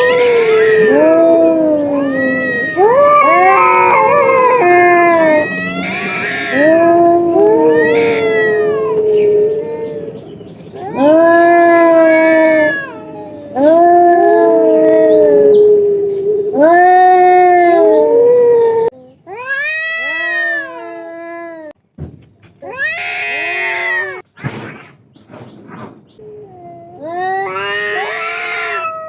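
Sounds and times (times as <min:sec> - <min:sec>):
cats caterwauling: 0:00.0 - 0:21.8, 0:22.6 - 0:24.2, 0:26.2 - 0:29.0
cat screech: 0:05.2 - 0:06.8, 0:27.5 - 0:29.0.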